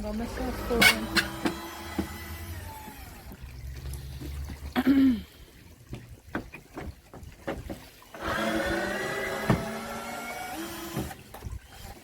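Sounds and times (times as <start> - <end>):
small electric motor whining: 8.2 - 12.0.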